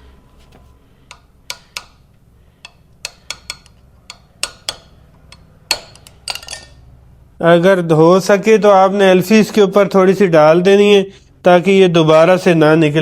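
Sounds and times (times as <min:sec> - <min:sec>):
sharp metallic taps: 0:01.0 - 0:06.8.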